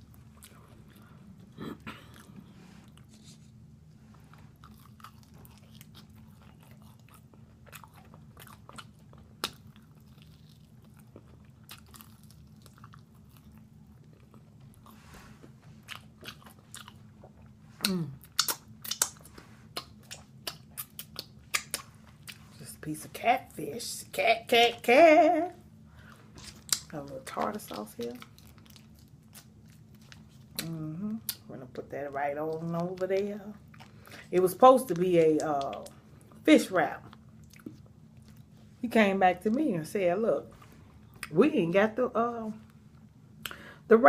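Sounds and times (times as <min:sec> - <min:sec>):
person chewing crispy food: 0:00.0 - 0:22.6, 0:26.0 - 0:31.5, 0:32.5 - 0:34.3, 0:37.1 - 0:38.7.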